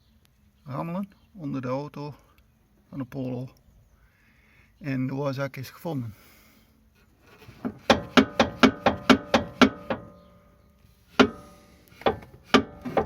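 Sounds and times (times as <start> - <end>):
metallic knocks under car: 7.5 - 10.3, 11.2 - 13.0.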